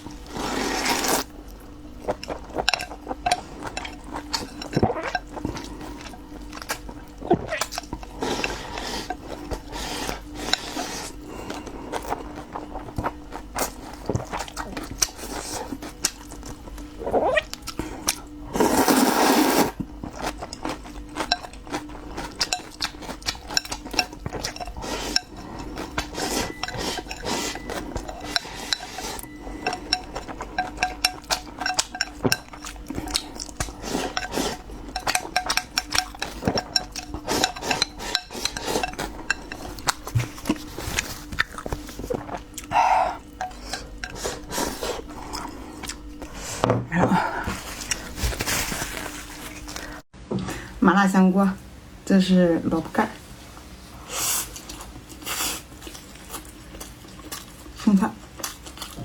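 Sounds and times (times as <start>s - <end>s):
utensils clinking against dishes: 13.3s - 50.0s.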